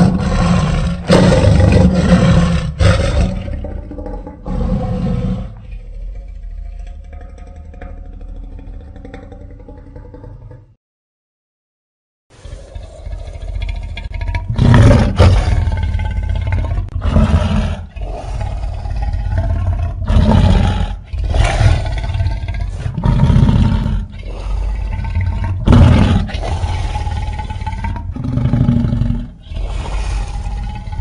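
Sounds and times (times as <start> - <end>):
monster roaring: 0.0 - 5.6, 14.4 - 31.0.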